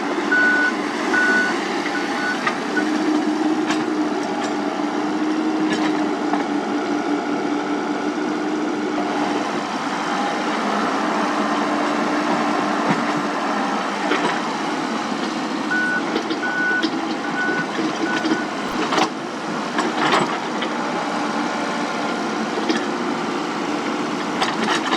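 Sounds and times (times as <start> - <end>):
excavator diesel engine running: 0.0 - 24.9
warning alarm beeps: 0.3 - 2.9, 15.7 - 18.8.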